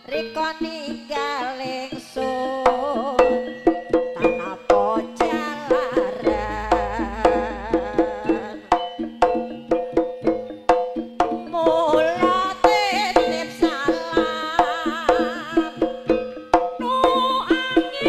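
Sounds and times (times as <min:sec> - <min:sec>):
hand drum strokes: 0:04.4 - 0:09.0
wavering vibrato melody: 0:04.4 - 0:09.6
sustained gong-like tones: 0:05.9 - 0:08.8.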